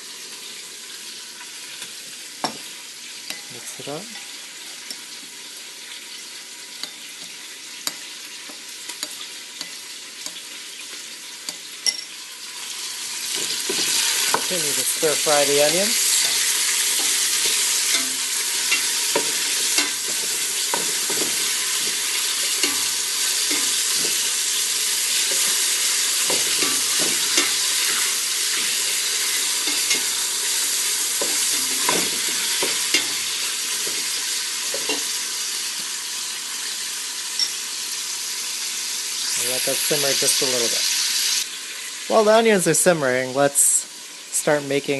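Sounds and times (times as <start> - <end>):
onions sizzling in hot oil: 0.0 - 44.9
utensil scraping and tapping pot: 6.8 - 10.5, 16.0 - 30.1, 31.2 - 35.1.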